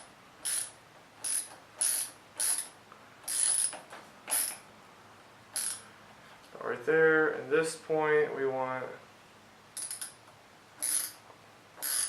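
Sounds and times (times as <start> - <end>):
ratchet wrench clicking: 0.4 - 4.6, 5.6 - 5.8, 9.8 - 10.2, 10.8 - 11.2, 11.8 - 12.0.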